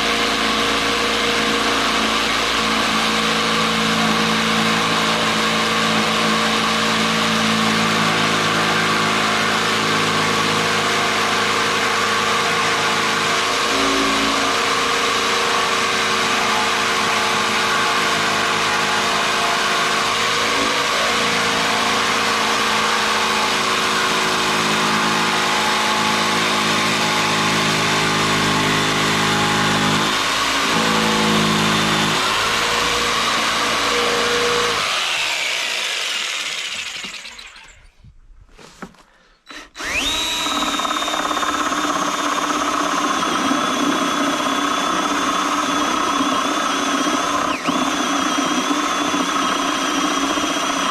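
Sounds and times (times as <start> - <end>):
electric power tool whining: 0.0 - 38.0, 39.4 - 50.9.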